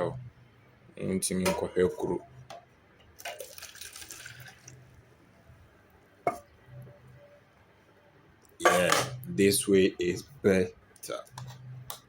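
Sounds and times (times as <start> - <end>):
hot water pouring and splashing: 3.2 - 4.8.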